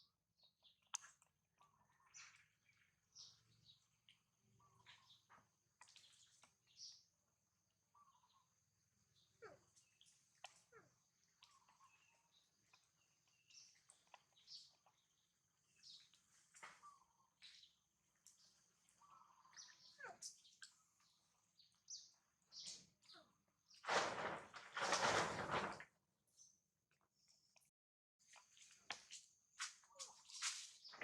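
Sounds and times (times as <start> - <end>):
animal chirps and clicks: 0.5 - 7.0, 9.3 - 21.3.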